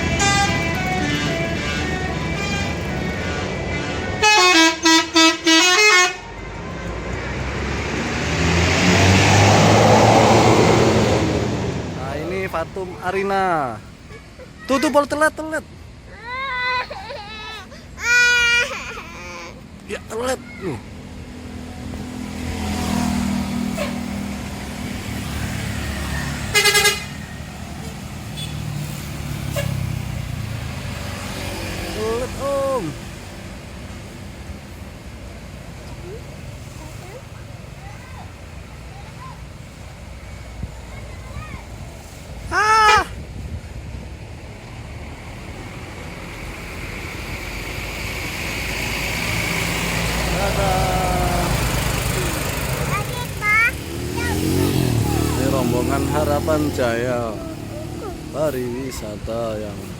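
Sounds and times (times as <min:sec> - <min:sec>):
multi-tone bus horn tune: 0:00.0 - 0:06.8, 0:23.6 - 0:24.1, 0:26.4 - 0:27.3, 0:28.3 - 0:28.7
bus engine driving past: 0:00.0 - 0:14.6, 0:17.0 - 0:59.9.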